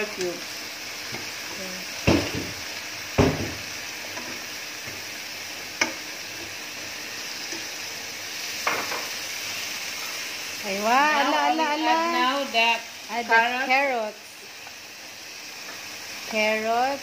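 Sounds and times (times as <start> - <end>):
food sizzling in a pan: 0.0 - 17.0
utensil knocking against pan: 2.0 - 2.6, 3.2 - 3.6.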